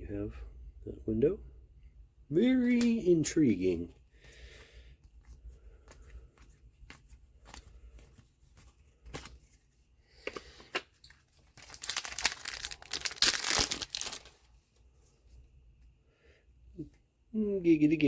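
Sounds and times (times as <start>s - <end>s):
trading cards being handled: 5.0s - 14.4s
wrapper being ripped open: 11.5s - 14.3s.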